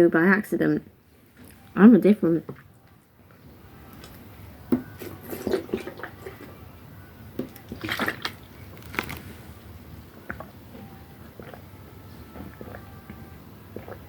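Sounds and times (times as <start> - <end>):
liquid sloshing in bottle: 4.0 - 6.6, 7.4 - 9.6, 10.2 - 11.6.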